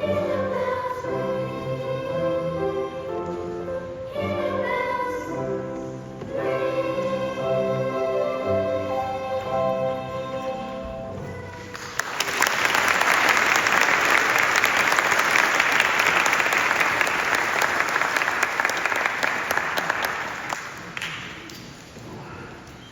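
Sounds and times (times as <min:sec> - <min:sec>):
audience applauding: 0:11.6 - 0:21.4.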